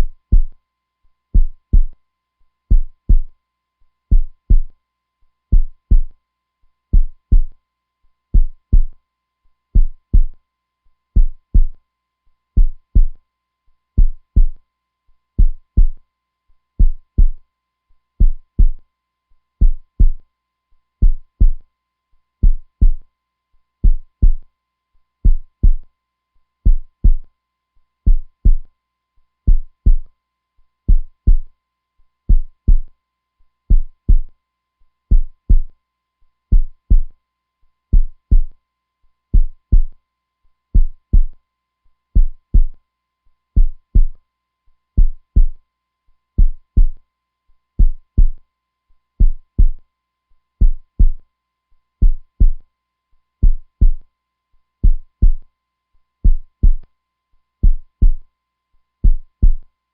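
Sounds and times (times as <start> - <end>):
heartbeat: 0.0 - 0.6, 1.4 - 2.0, 2.7 - 3.3, 4.1 - 4.7, 5.5 - 6.1, 6.9 - 7.5, 8.4 - 9.0, 9.8 - 10.4, 11.2 - 11.8, 12.6 - 13.2, 14.0 - 14.6, 15.4 - 16.0, 16.8 - 17.4, 18.2 - 18.8, 19.6 - 20.2, 21.0 - 21.6, 22.4 - 23.0, 23.8 - 24.5, 25.2 - 25.8, 26.7 - 27.3, 28.1 - 28.7, 29.5 - 30.1, 30.9 - 31.5, 32.3 - 32.9, 33.7 - 34.3, 35.1 - 35.7, 36.5 - 37.2, 37.9 - 38.5, 39.4 - 39.9, 40.8 - 41.4, 42.2 - 42.8, 43.6 - 44.2, 45.0 - 45.6, 46.4 - 47.0, 47.8 - 48.4, 49.2 - 49.8, 50.6 - 51.2, 52.0 - 52.6, 53.4 - 54.0, 54.8 - 55.4, 56.2 - 56.8, 57.6 - 58.2, 59.0 - 59.7.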